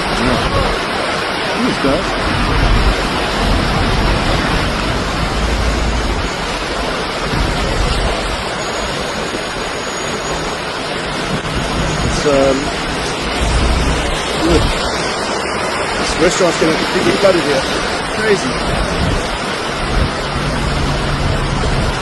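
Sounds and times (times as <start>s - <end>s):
heavy rain: 0.0s - 22.0s
strong wind: 0.0s - 22.0s
wind gusts hitting microphone: 0.0s - 22.0s.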